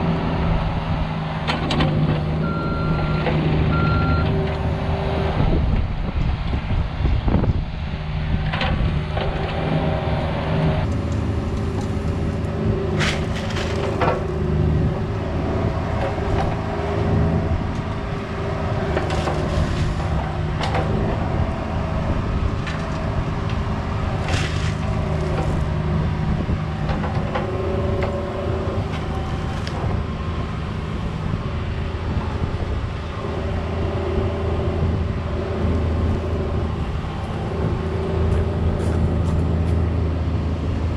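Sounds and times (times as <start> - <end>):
excavator diesel engine running: 0.0 - 40.9
metal clanks and scrapes: 12.9 - 14.5, 24.2 - 25.7.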